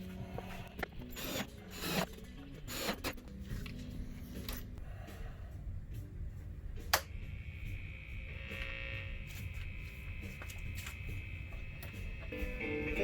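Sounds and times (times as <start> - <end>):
amplifier mains hum: 5.5 - 13.0
high steady whine: 5.6 - 13.0.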